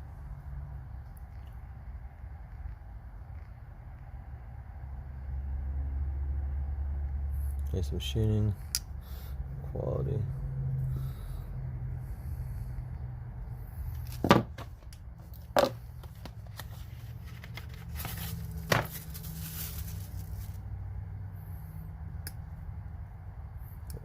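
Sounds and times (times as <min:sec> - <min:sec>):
low room hum: 0:00.0 - 0:24.0
short rustle: 0:16.1 - 0:20.6.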